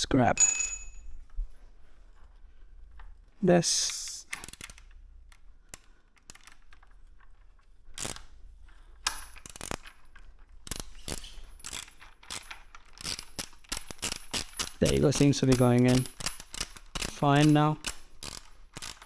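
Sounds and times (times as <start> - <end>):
hand ratchet clicking: 3.8 - 19.0.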